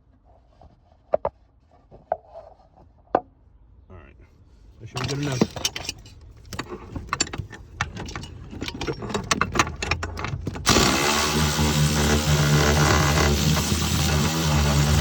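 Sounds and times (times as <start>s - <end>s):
metal tools clattering: 4.8s - 10.8s
motor drone: 10.7s - 15.0s.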